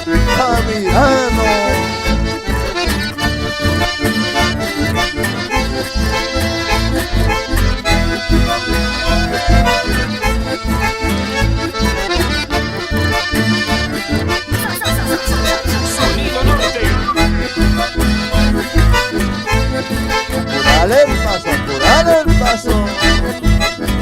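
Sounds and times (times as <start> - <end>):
accordion playing: 0.0 - 24.0
steady bass beat: 6.0 - 11.6, 14.9 - 19.1.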